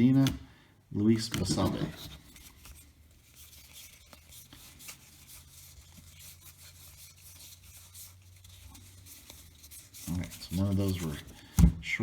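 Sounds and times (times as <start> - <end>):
light clicks of card edges: 0.0 - 0.5, 1.2 - 6.3
cards rubbing and rustling: 0.0 - 11.6.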